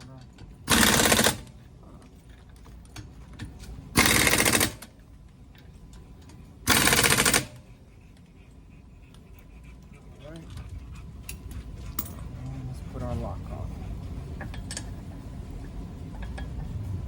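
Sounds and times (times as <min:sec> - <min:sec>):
impact wrench rattling bursts: 0:00.6 - 0:01.6, 0:03.9 - 0:05.0, 0:06.6 - 0:07.6.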